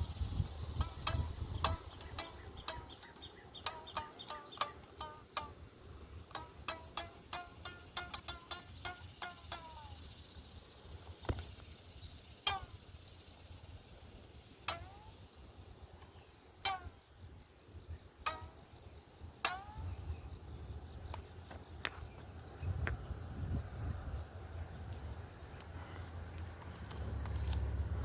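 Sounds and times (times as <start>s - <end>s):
faint ticks: 6.2s - 9.9s
fishing line twanging: 12.5s - 12.8s, 14.6s - 15.1s, 16.6s - 17.0s, 18.3s - 18.7s.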